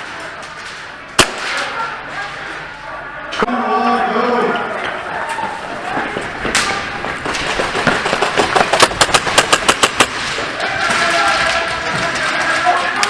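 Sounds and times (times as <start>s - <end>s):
airsoft guns firing: 1.2s - 1.8s, 6.5s - 11.6s.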